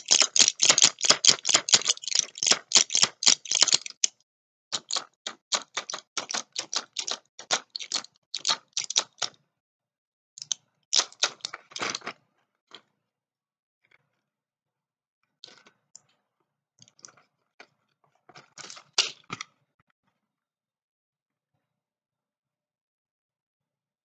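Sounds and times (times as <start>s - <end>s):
medicine packaging clicking and crackling: 0.0s - 4.1s, 4.8s - 9.3s, 10.4s - 12.1s.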